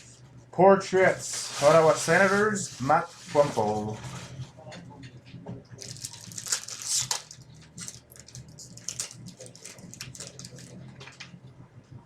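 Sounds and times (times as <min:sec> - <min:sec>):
foil wrapper crinkling and tearing: 0:01.2 - 0:03.9, 0:05.8 - 0:10.9
cards sliding and rustling: 0:01.3 - 0:03.8.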